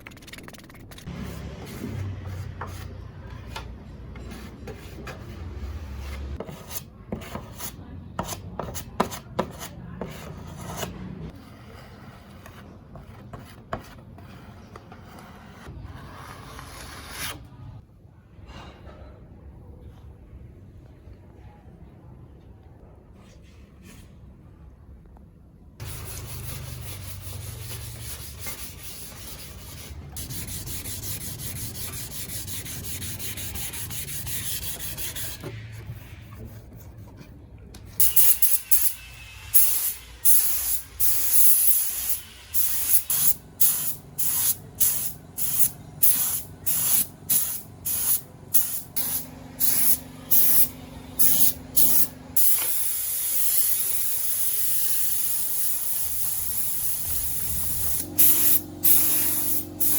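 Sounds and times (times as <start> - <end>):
spray gun hissing: 38.0 - 59.9.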